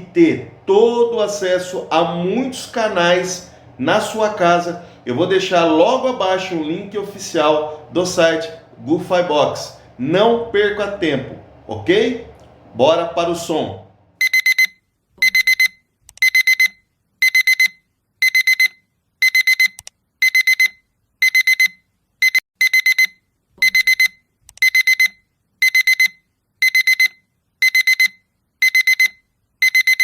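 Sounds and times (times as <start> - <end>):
alarm clock beeping: 14.2 - 30.0.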